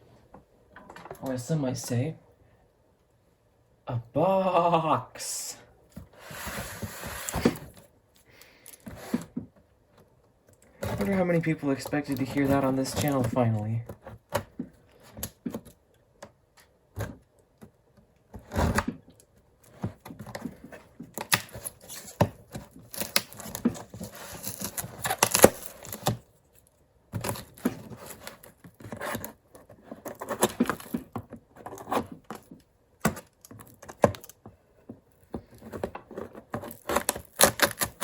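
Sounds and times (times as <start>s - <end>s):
cardboard and tape tearing: 6.2s - 7.8s, 10.8s - 13.6s, 19.8s - 26.3s, 27.2s - 34.4s, 35.4s - 38.0s.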